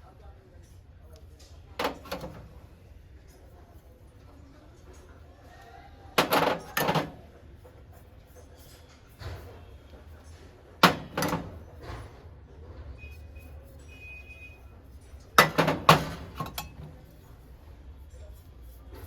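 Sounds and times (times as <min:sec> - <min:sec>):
metal objects knocking: 0:15.4 - 0:16.9.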